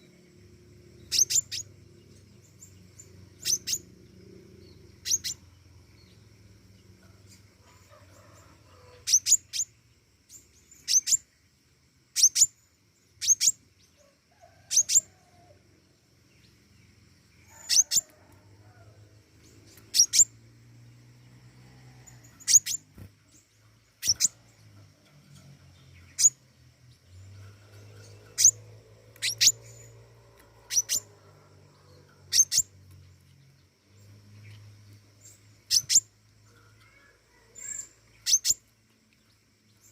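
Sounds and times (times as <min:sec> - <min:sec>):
faint low hum: 0:00.0 - 0:39.9
bird sharp high chirps: 0:01.0 - 0:01.7, 0:02.6 - 0:03.9, 0:05.0 - 0:05.5, 0:09.0 - 0:11.3, 0:12.1 - 0:12.6, 0:13.2 - 0:13.6, 0:14.7 - 0:15.1, 0:19.7 - 0:20.4, 0:22.3 - 0:23.1, 0:24.0 - 0:24.4, 0:28.0 - 0:31.2, 0:32.2 - 0:32.7, 0:35.2 - 0:36.1, 0:36.8 - 0:38.7.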